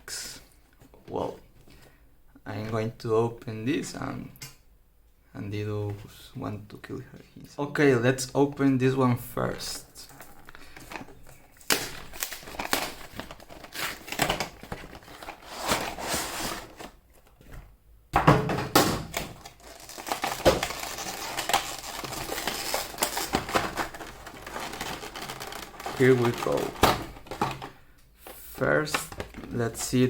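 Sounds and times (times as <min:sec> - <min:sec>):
packaging crinkling and tearing: 0:10.0 - 0:17.3, 0:19.1 - 0:27.8.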